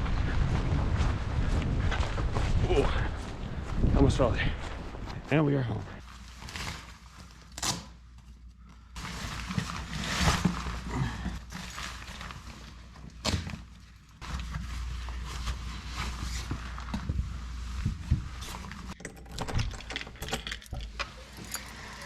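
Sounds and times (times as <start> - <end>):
footsteps: 0.0 - 5.3
handling noises: 8.0 - 22.0.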